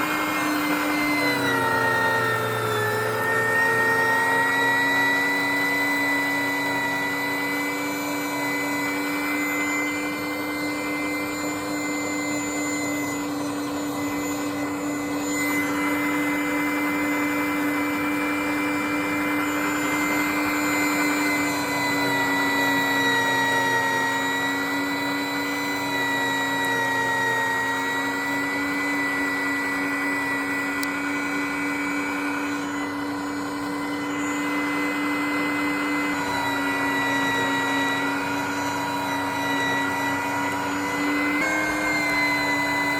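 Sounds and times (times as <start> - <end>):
meat grinder motor whining: 0.0 - 42.9.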